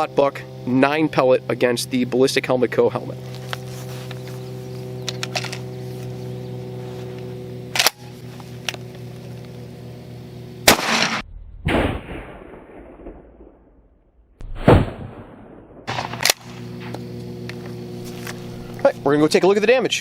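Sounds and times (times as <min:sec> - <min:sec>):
sharp cracks: 0:05.0 - 0:05.7, 0:07.7 - 0:08.9, 0:10.7 - 0:19.1
shotgun bangs: 0:10.6 - 0:13.1, 0:14.6 - 0:16.6.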